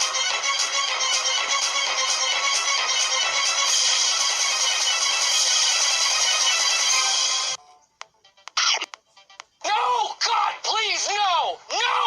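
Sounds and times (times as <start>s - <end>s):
bright thin tune with beat: 0.0s - 9.6s.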